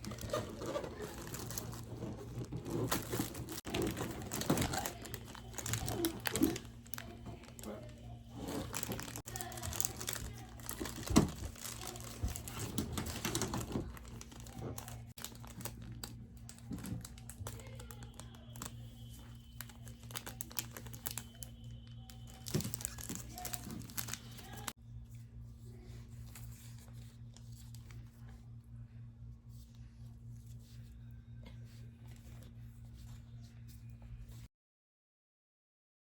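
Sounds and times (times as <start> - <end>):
packaging crinkling and rustling: 0.0 - 24.8
steady low hum: 0.0 - 34.5.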